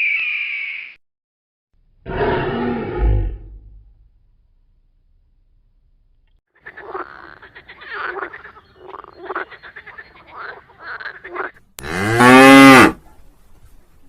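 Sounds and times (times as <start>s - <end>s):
rough animal calls: 2.0s - 3.9s
cow mooing: 11.8s - 13.0s.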